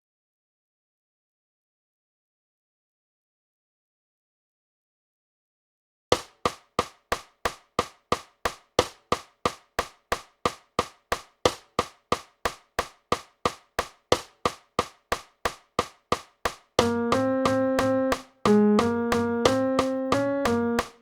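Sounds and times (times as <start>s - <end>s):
metronome clicking: 16.5s - 21.0s.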